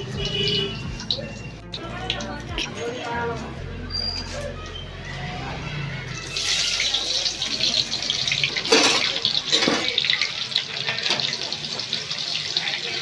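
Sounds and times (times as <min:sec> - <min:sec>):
tap water running into sink: 0:06.3 - 0:13.0.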